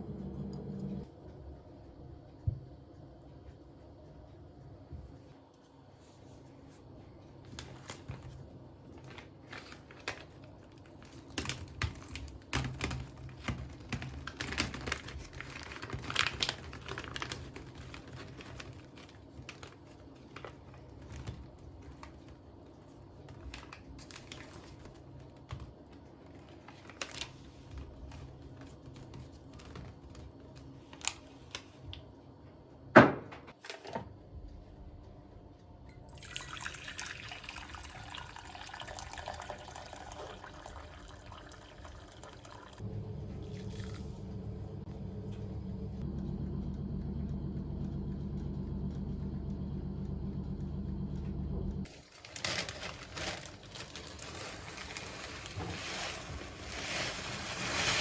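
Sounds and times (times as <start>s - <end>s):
crinkling: 6.0s - 32.1s, 51.8s - 58.0s.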